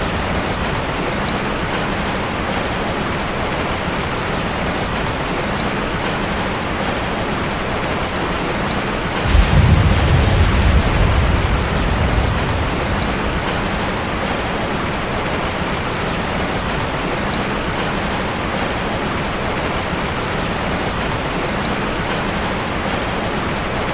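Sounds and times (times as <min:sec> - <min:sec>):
rain falling on leaves: 0:00.0 - 0:23.9
deep rumble of thunder: 0:09.1 - 0:15.9.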